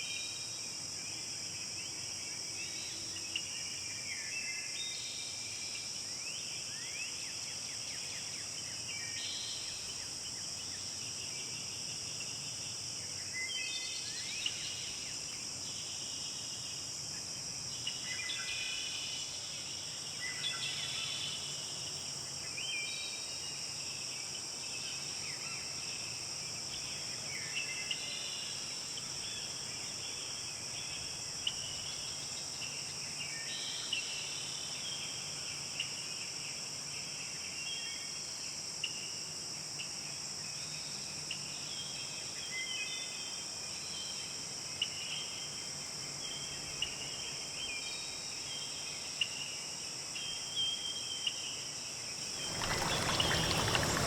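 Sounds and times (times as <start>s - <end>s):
high-pitched insect chorus: 0.0s - 54.0s
songbirds singing: 52.2s - 54.0s.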